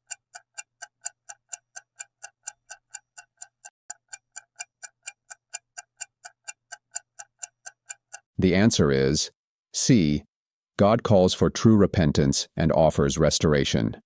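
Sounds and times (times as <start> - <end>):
clock ticking: 0.0 - 8.7.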